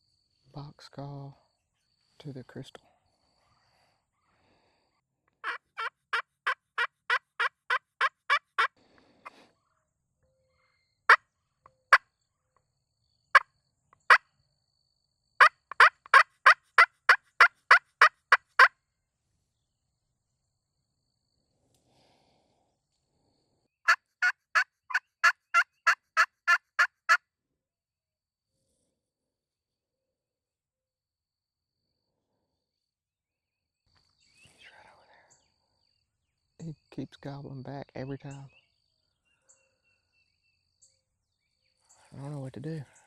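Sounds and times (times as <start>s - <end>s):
turkey call yelping: 5.4s - 9.4s, 15.4s - 18.7s, 23.9s - 27.2s.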